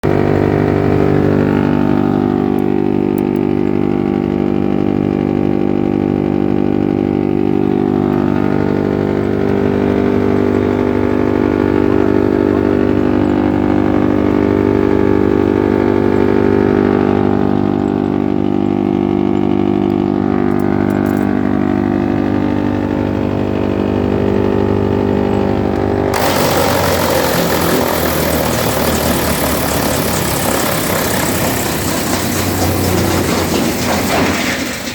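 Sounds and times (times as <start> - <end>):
wood chipper running: 0.0 - 34.9
loud rushing noise: 26.1 - 34.6.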